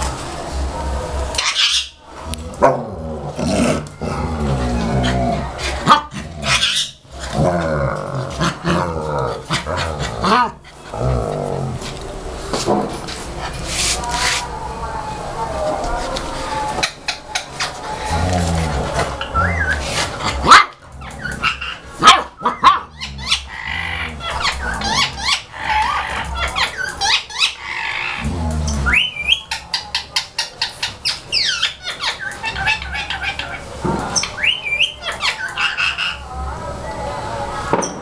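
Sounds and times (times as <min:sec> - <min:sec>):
dogs barking: 0:19.2 - 0:29.4.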